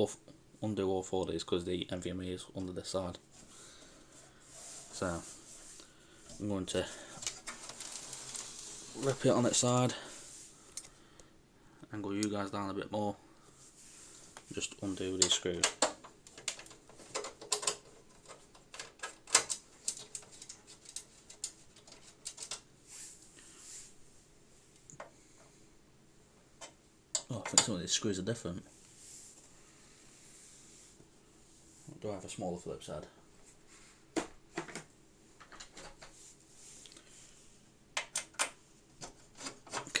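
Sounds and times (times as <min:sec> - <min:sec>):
tools and screws handled: 0:07.1 - 0:09.3, 0:15.1 - 0:22.7.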